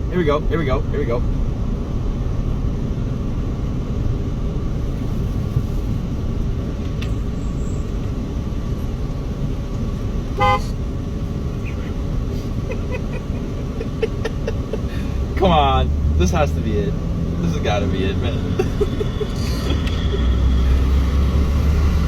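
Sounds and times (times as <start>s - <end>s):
car road and engine noise: 0.0s - 22.0s
car horn toot: 10.4s - 10.8s.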